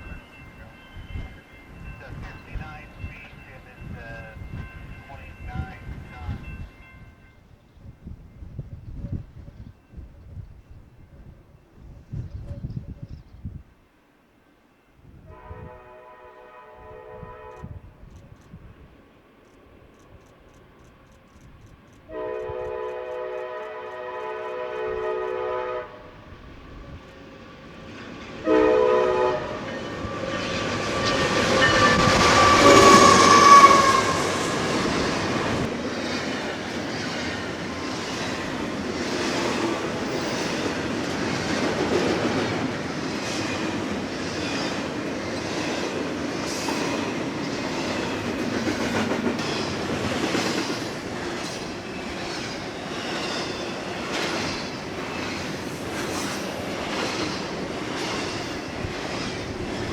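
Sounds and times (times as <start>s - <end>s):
train air horn blasts: 15.2s - 18.0s, 22.1s - 26.3s, 28.4s - 35.7s
train wheels clicking over rails: 26.6s - 59.9s.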